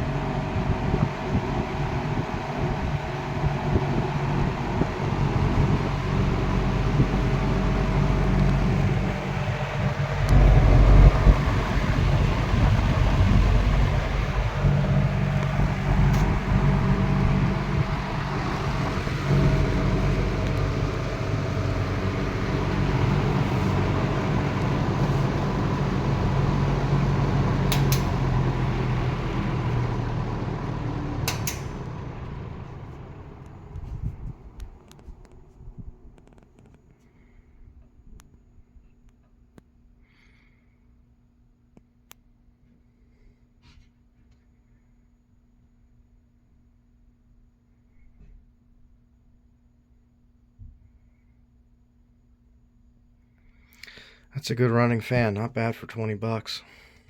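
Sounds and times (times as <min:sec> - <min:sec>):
box fan running: 0:00.0 - 0:39.5.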